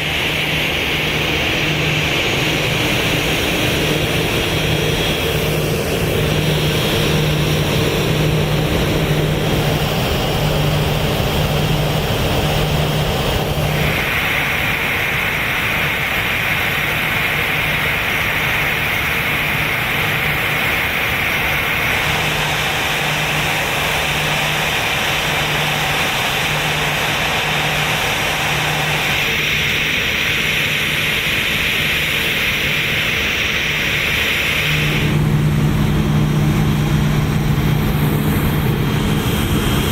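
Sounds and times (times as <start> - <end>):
engine and machinery noise: 0.0 - 39.9.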